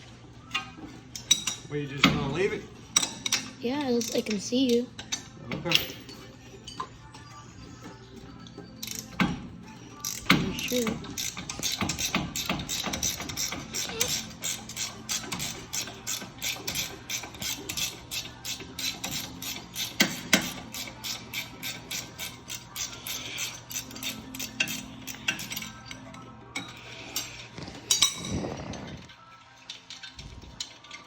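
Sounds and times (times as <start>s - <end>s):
ratchet wrench clicking: 8.8s - 9.2s, 10.0s - 26.0s.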